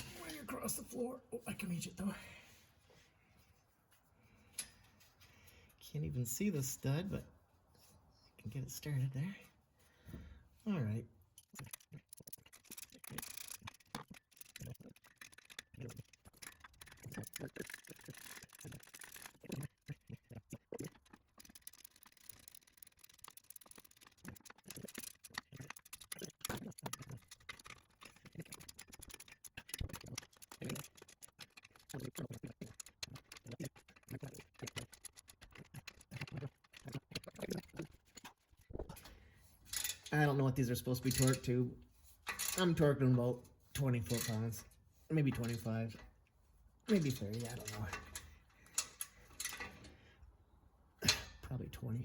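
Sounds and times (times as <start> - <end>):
metallic clicks of tools and nuts: 4.5 - 5.2, 11.3 - 46.2, 46.9 - 50.2, 51.0 - 51.8.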